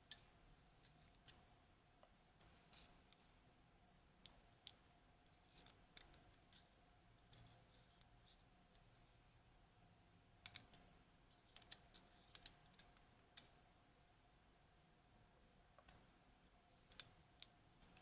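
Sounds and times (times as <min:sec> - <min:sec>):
metallic clicks of lock parts: 0:10.4 - 0:13.6.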